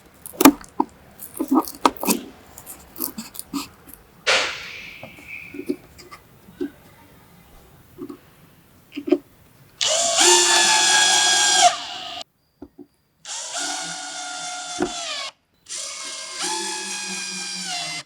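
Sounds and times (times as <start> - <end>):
power tool motor whining: 9.8 - 12.2, 13.3 - 18.0.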